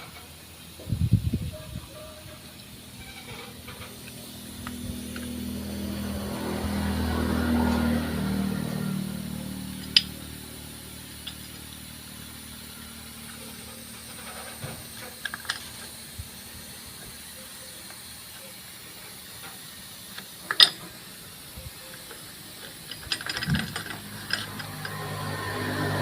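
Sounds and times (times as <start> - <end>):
metallic clicks of clutch parts: 3.2 - 6.8, 7.7 - 10.4, 11.1 - 11.9, 13.2 - 16.0, 19.3 - 21.0, 21.9 - 26.0.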